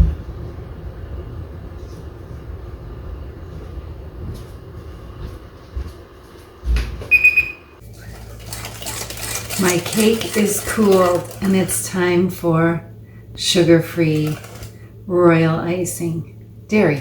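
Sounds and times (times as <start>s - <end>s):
low kitchen rumble: 0.0s - 17.0s
short electronic beep: 7.1s - 7.7s.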